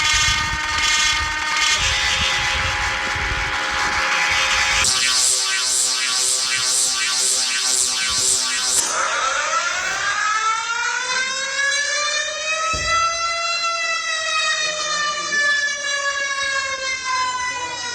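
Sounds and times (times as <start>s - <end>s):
pulsing electronic alarm tone: 0.0s - 17.9s
siren wailing: 0.0s - 17.9s
low thump: 12.7s - 13.4s.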